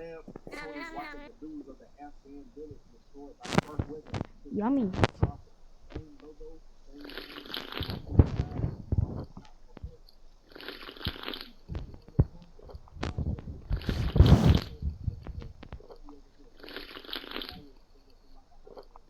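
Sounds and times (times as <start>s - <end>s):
person chewing and crunching food: 7.0s - 19.0s.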